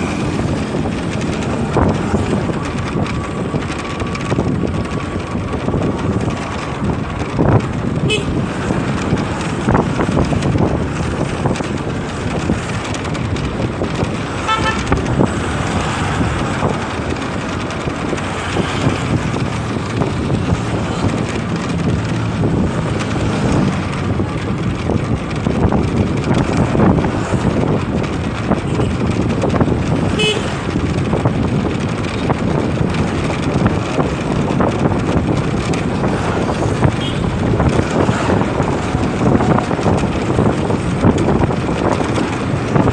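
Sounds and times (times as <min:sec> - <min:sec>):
motorcycle engine: 0:00.0 - 0:42.9
road and wind noise: 0:00.0 - 0:42.9
vehicle horn tooting: 0:08.0 - 0:08.4, 0:14.4 - 0:15.0, 0:30.2 - 0:30.5, 0:37.0 - 0:37.3.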